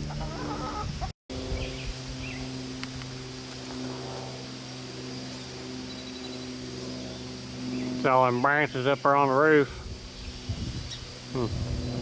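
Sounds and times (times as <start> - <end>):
chickens clucking: 0.0 - 1.1
low mechanical hum: 0.0 - 12.0.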